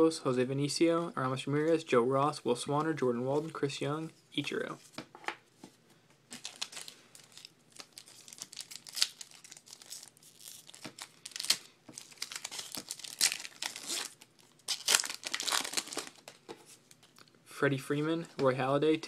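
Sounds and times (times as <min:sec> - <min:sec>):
wrapper crinkling: 0:06.3 - 0:17.2
wrapper ripping: 0:06.3 - 0:17.2.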